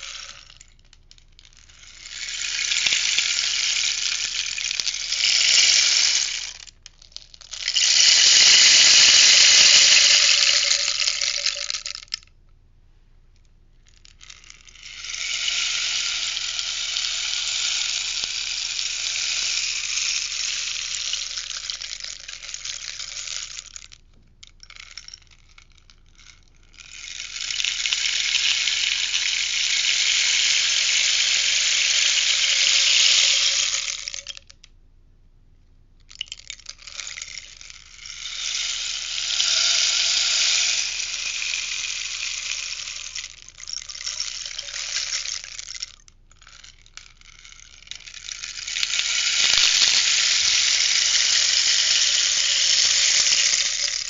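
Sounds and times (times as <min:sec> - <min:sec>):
rainstick beads trickling: 0:00.0 - 0:12.3, 0:13.8 - 0:34.6, 0:36.1 - 0:54.0.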